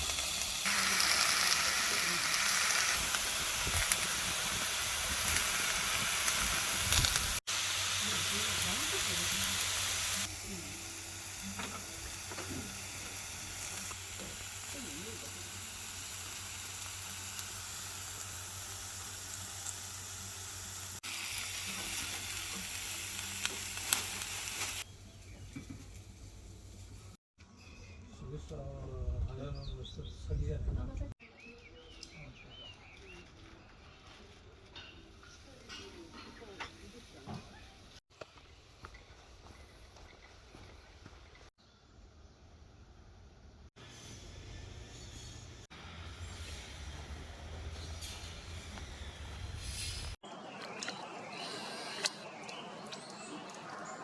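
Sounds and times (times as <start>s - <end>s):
meat sizzling on a grill pan: 0.0s - 24.9s.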